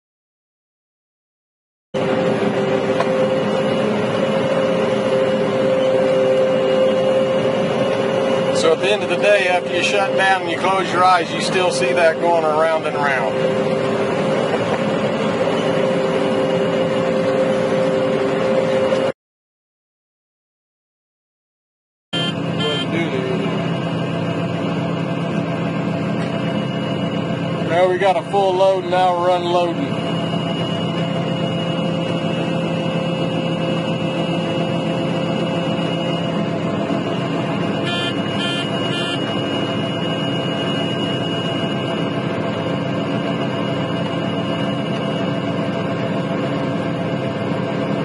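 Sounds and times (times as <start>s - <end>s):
combine harvester droning: 2.0s - 19.2s, 22.2s - 48.0s
short beeps: 22.2s - 23.6s, 37.6s - 45.4s.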